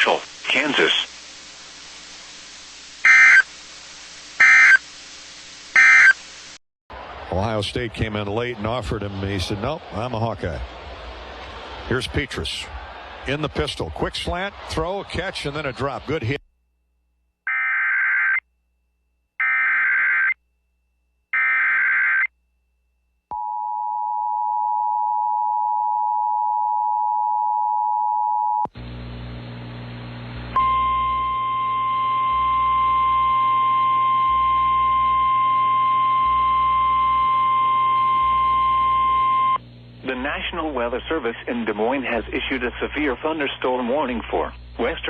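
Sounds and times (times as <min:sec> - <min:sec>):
steady warning alarm tone: 0:03.1 - 0:03.5, 0:04.4 - 0:04.8, 0:05.8 - 0:06.2.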